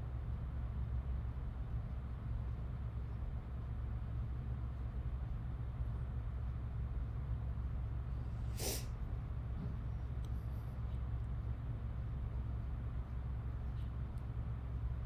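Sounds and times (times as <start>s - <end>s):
low background hum: 0.0s - 15.0s.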